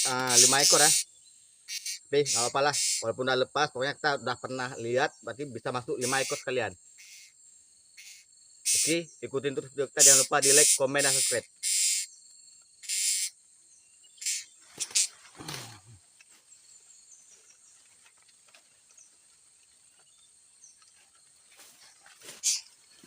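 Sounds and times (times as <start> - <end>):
faint chirps: 0.0 - 23.0
high insect drone: 0.0 - 23.0
short hissing rustles: 14.2 - 16.6, 20.9 - 23.0.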